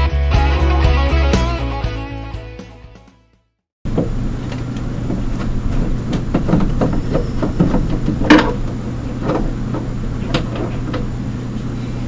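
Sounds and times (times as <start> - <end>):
hard objects knocking and clicking: 3.9 - 11.2
steady low hum: 3.9 - 12.0.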